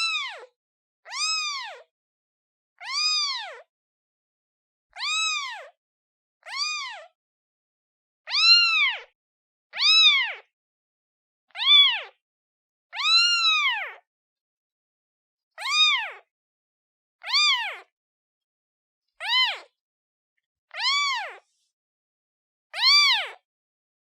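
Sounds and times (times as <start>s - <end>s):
kitten meowing: 0.0s - 0.5s, 1.1s - 1.9s, 2.8s - 3.7s, 5.0s - 5.7s, 6.5s - 7.1s, 8.3s - 9.1s, 9.8s - 10.5s, 11.6s - 12.2s, 13.0s - 14.0s, 15.6s - 16.3s, 17.2s - 17.9s, 19.2s - 19.7s, 20.8s - 21.4s, 22.8s - 23.4s.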